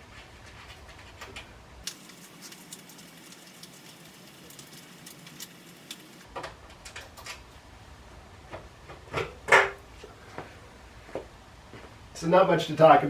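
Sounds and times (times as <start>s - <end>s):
tools clicking and tapping: 1.9s - 6.3s.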